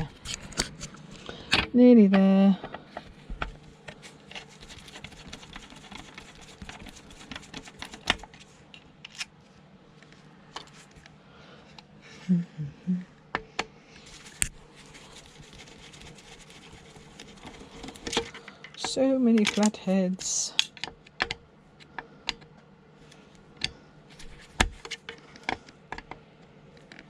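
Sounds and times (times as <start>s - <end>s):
screwdriver clicks and scrapes: 0.1s - 0.9s.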